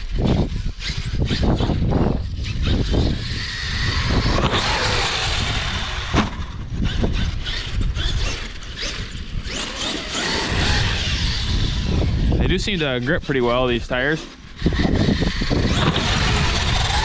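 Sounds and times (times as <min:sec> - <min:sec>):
drivetrain and tyre noise: 0:00.0 - 0:17.0
electric motor whining: 0:00.0 - 0:17.0
wind buffeting microphone: 0:00.0 - 0:17.0.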